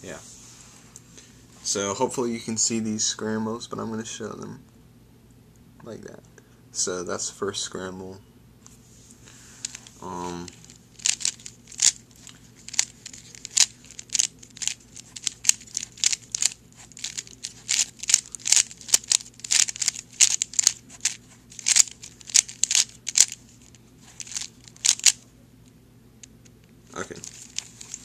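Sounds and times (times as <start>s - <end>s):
puzzle cube plastic clicks: 9.6s - 25.2s, 27.2s - 28.0s.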